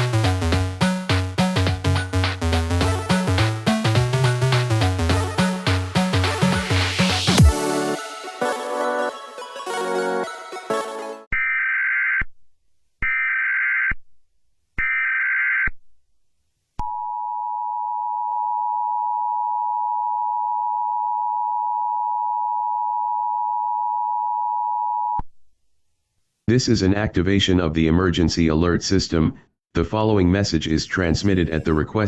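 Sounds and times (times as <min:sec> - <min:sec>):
electronic dance music: 0:00.0 - 0:11.3.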